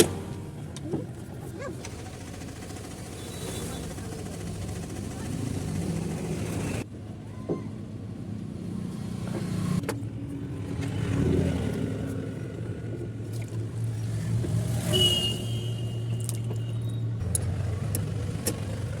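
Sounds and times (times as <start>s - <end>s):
small three-wheeler engine running: 0.0s - 6.9s, 17.2s - 19.0s.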